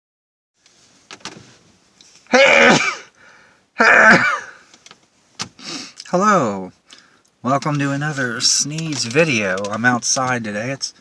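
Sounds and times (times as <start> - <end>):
man sneezing: 2.3 - 3.2, 3.8 - 4.6
short catching breaths: 3.0 - 3.7, 5.5 - 6.1, 6.8 - 7.4.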